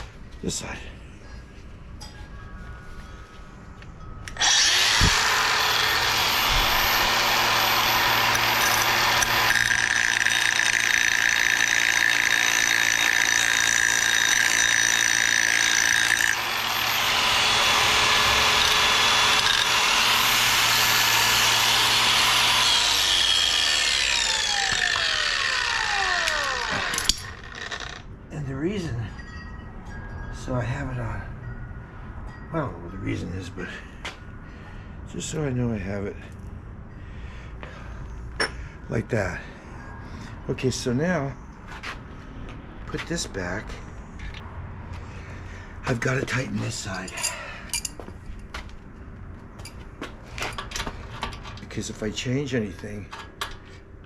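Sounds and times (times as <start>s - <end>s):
power grinder grinding metal: 4.3s - 28.0s.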